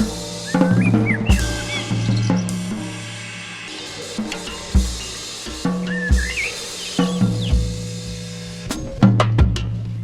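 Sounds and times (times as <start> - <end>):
bass drum hit: 0.0 - 5.2
high chirping glides: 0.0 - 7.7
drum and cymbal strokes: 0.0 - 9.9
low ringing drum tone: 0.0 - 9.9.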